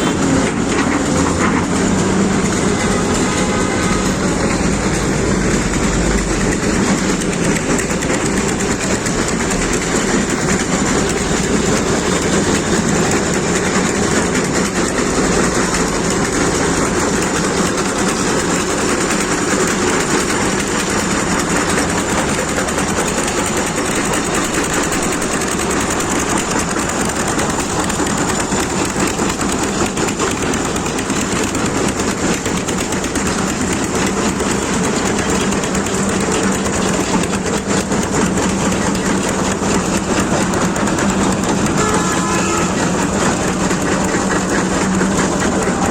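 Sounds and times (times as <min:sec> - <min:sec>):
heavy machinery rattling: 0:00.0 - 0:45.9.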